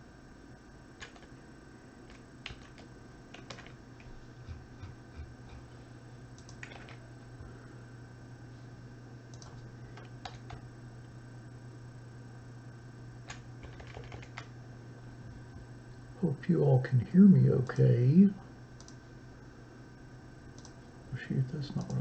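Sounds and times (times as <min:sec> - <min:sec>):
steady low hum: 0:00.0 - 0:22.0
keyboard and mouse clicks: 0:02.1 - 0:03.8, 0:06.4 - 0:07.0, 0:09.3 - 0:10.6, 0:13.3 - 0:14.5, 0:18.8 - 0:19.0, 0:20.6 - 0:20.8.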